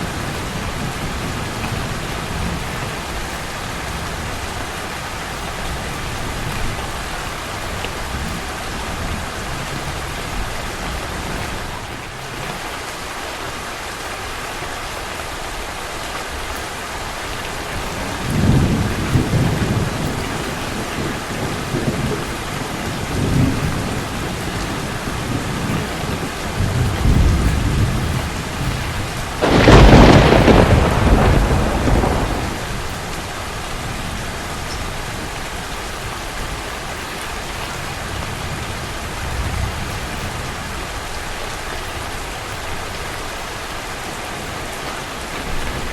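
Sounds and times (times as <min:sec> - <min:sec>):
steady rain falling: 0:00.0 - 0:45.9
low rolls of thunder: 0:17.2 - 0:36.7
loud thunderclap: 0:17.8 - 0:35.3.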